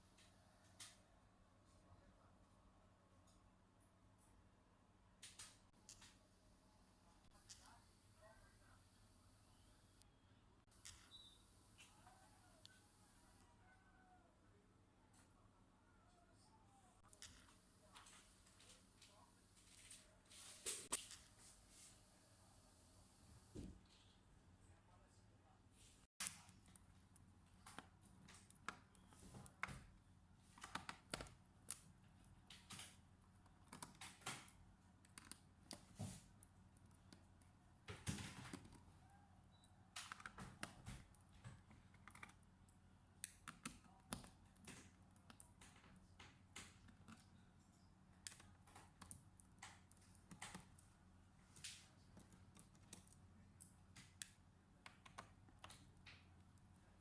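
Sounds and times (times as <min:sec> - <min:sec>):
light clicks and taps: 0:43.2 - 0:50.9.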